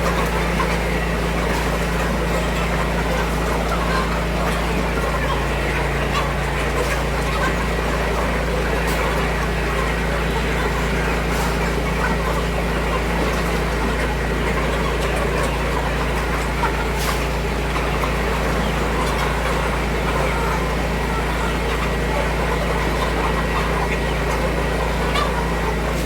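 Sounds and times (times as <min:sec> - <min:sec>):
low mechanical drone: 0:25.8 - 0:26.0.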